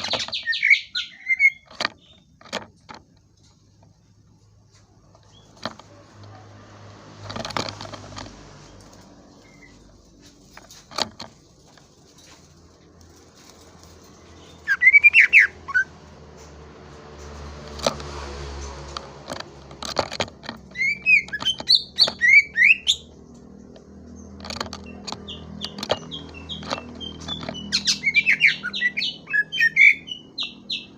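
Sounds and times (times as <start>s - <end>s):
sharp bird chirping: 0.0s - 2.3s, 14.3s - 15.9s, 24.8s - 30.9s
rustling: 1.5s - 15.5s
clicks: 1.6s - 15.3s, 15.9s - 22.4s, 23.1s - 27.9s
bird singing whistled notes: 14.6s - 15.9s, 26.1s - 30.9s.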